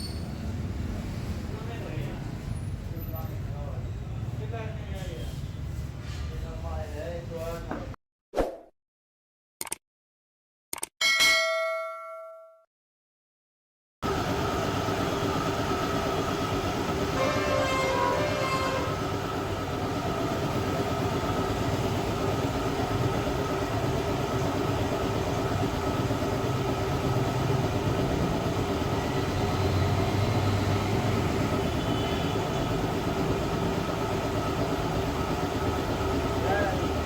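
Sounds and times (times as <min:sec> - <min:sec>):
hot-air welder blower whir: 0:14.0 - 0:37.0.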